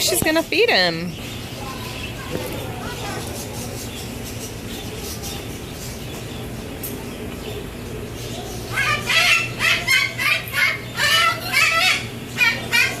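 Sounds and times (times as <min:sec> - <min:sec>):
bird squawking: 0:08.2 - 0:13.0.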